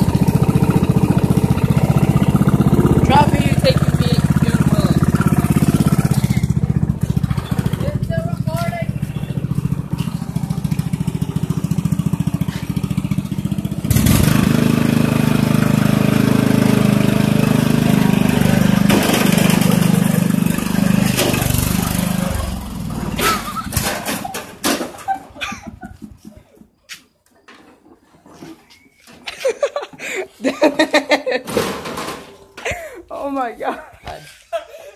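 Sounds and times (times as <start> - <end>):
engine knocking: 0.0 - 14.8
lawn mower engine running: 0.0 - 26.3.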